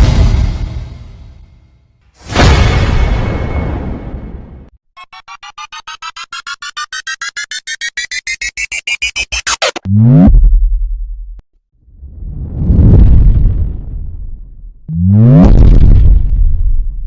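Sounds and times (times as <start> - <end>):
warbling electronic sweep: 5.0 - 10.3
rapid rising electronic beeps: 5.0 - 11.1.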